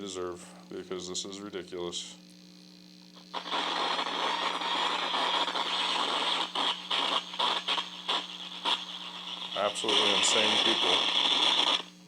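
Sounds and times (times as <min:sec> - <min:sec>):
steady low hum: 0:00.0 - 0:12.0
radio static crackling: 0:03.0 - 0:12.0.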